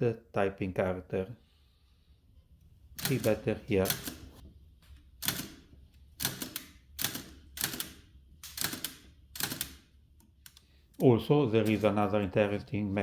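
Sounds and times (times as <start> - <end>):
typewriter keystrokes clacking: 3.0 - 4.2, 5.2 - 5.6, 6.2 - 9.9.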